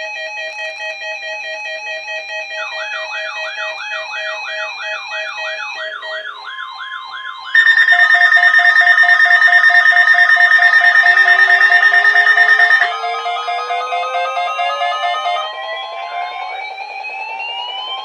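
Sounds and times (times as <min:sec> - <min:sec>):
rising warble alarm: 0:02.4 - 0:18.0
high alarm tone with pulsing beeps: 0:02.5 - 0:18.0
electronic beeping tones: 0:07.6 - 0:16.4.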